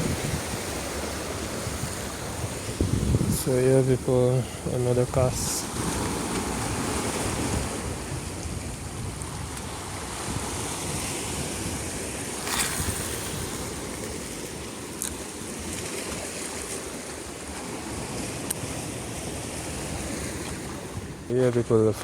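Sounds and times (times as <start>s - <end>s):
wind buffeting microphone: 0.0s - 14.8s
sea waves washing on shore: 0.0s - 22.0s.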